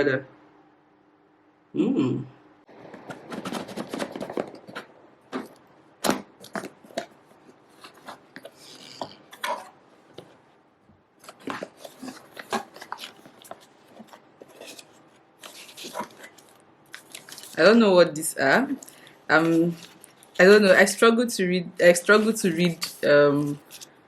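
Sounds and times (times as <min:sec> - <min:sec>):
packaging clicks taps and rustles: 0:02.9 - 0:07.2, 0:11.2 - 0:17.6.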